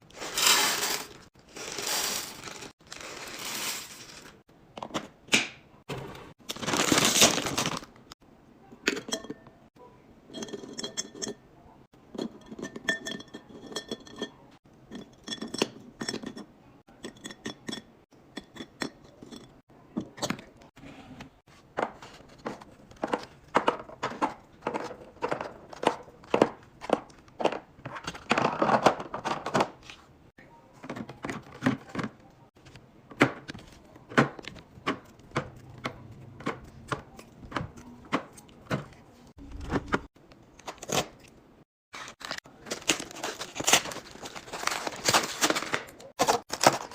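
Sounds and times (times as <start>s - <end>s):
packaging rustling: 0.1s - 4.4s, 6.5s - 8.0s, 42.0s - 46.9s
items knocking plastic containers: 0.2s - 8.0s, 21.7s - 29.8s, 30.8s - 38.9s, 42.2s - 46.9s.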